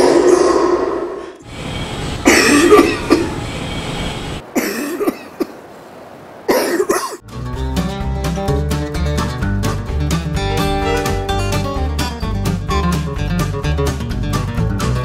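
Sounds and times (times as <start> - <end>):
person coughing: 2.2 - 3.4, 4.6 - 5.6, 6.5 - 7.2
acoustic guitar music: 7.2 - 15.0.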